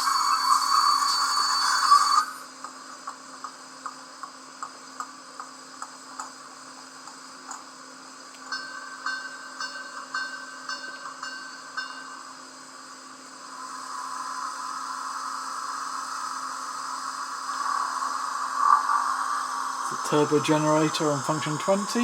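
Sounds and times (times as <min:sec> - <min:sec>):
steam hiss: 0:00.0 - 0:02.6, 0:08.5 - 0:22.0.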